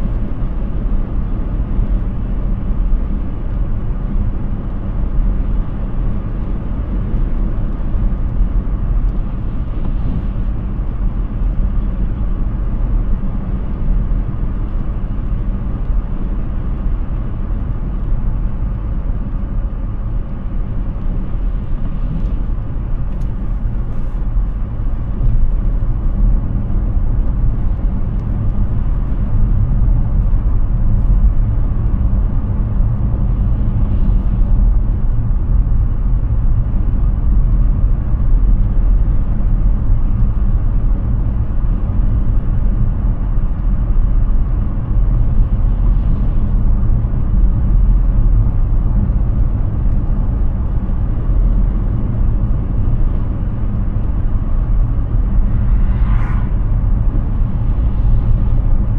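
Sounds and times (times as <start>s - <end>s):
tyre and road rumble: 19.3s - 58.9s.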